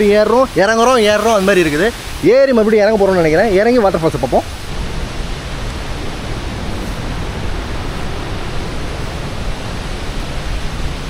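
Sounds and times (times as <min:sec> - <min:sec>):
waterfall roaring: 0:00.0 - 0:11.0.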